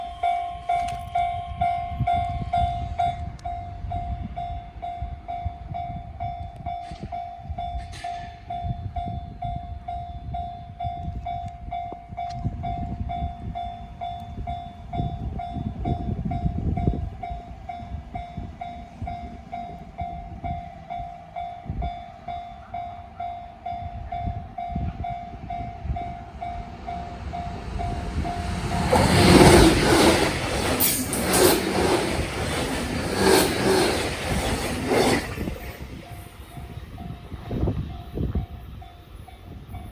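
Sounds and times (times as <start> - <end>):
train passing at speed: 0.0 - 39.9
wheels clacking over rail joints: 25.9 - 36.8.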